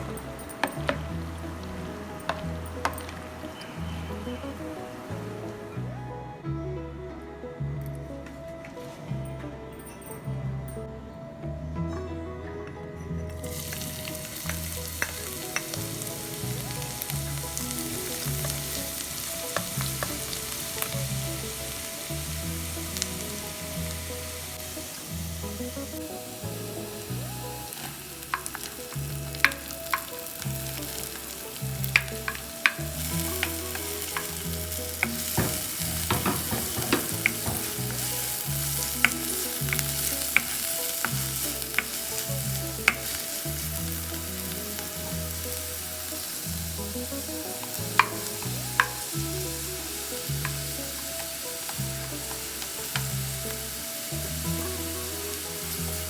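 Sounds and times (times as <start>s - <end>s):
food sizzling in a pan: 0.0s - 5.7s, 13.4s - 56.0s
utensil striking a pan: 13.5s - 21.0s, 28.2s - 43.2s, 47.6s - 49.0s.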